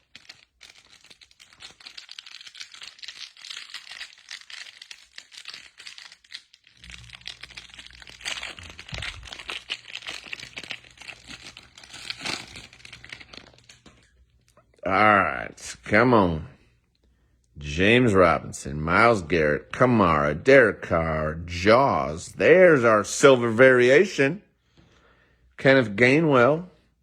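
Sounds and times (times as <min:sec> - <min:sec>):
wrapper crinkling and tearing: 0:00.0 - 0:14.6.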